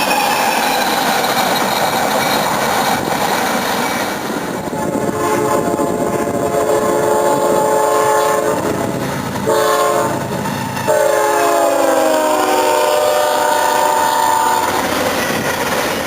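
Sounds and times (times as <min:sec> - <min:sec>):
train rumbling: 0:00.0 - 0:16.0
locomotive air horn blasts: 0:04.8 - 0:10.3, 0:10.9 - 0:14.8.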